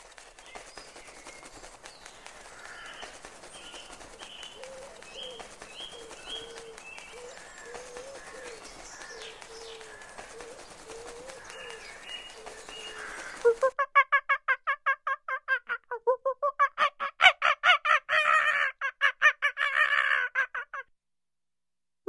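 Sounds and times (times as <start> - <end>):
birds chirping: 0.0 - 13.7.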